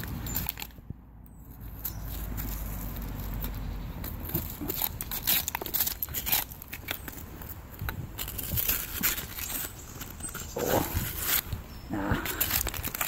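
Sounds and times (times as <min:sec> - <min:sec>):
hard objects clicking and scraping: 0:00.0 - 0:13.0.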